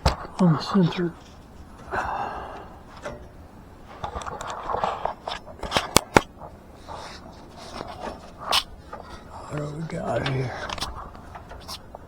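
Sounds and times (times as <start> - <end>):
rustling and scraping of tools: 0.0 - 12.0.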